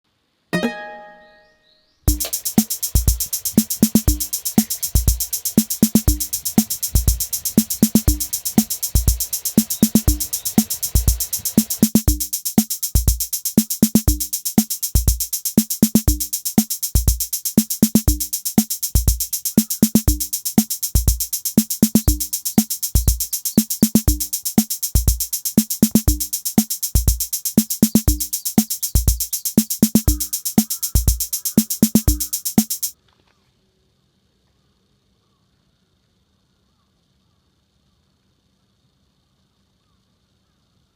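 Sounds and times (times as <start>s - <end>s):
electronic drum-machine beat: 0.6s - 1.2s, 2.1s - 33.0s
brief chime: 0.6s - 1.6s.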